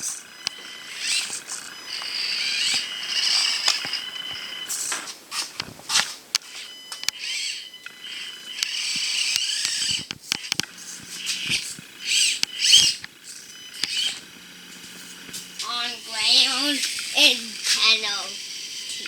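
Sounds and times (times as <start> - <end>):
toy car motor whining: 0.0 - 19.0
sharp clicks and knocks: 8.6 - 15.7.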